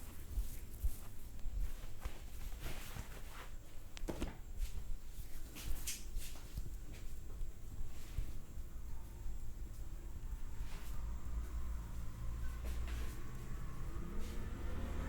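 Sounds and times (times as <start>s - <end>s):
hands rubbing skin and hair: 0.0s - 8.4s.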